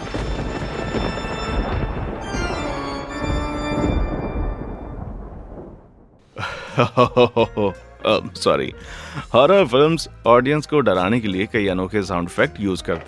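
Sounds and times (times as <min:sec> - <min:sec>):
heavy low rumble: 0:00.0 - 0:06.4.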